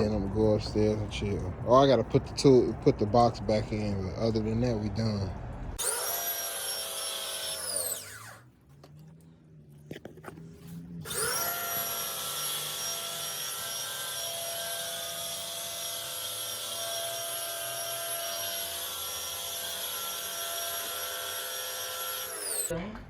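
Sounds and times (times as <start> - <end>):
vacuum cleaner motor whining: 11.0 - 22.7.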